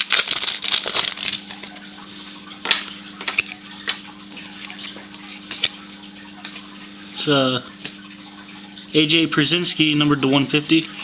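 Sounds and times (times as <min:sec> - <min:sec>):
cards clicking and snapping: 0:00.0 - 0:01.8
wrapper crinkling: 0:00.0 - 0:01.9.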